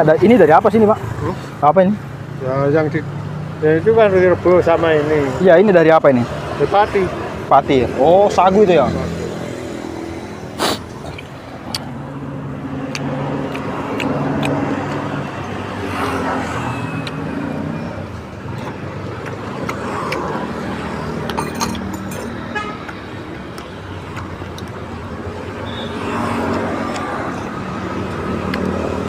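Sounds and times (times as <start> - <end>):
motor vehicles passing: 0.0 - 29.0
sharp clicks: 28.1 - 28.8.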